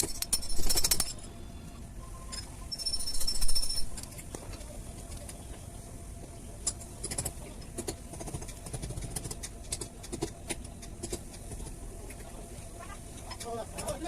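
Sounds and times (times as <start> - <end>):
hand tools tapping metal parts: 0.0 - 1.3.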